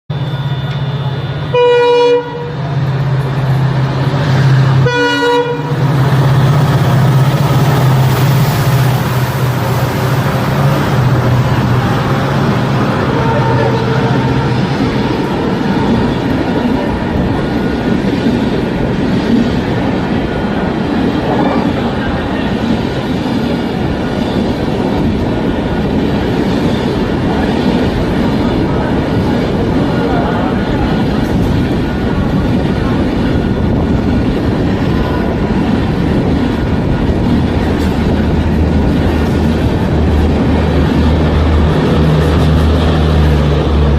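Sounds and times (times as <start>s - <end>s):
diesel locomotive engine humming: 0.1s - 43.9s
locomotive horn blasts: 0.2s - 2.7s, 4.8s - 5.8s, 13.0s - 15.2s.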